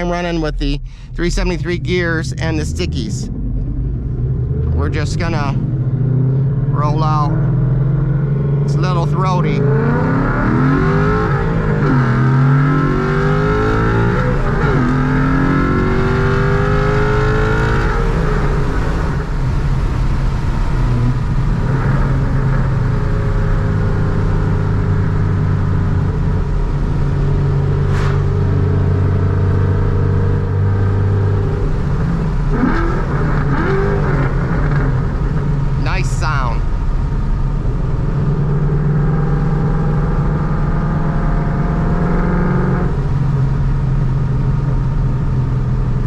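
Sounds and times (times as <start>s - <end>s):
car engine accelerating hard: 0.0s - 46.0s.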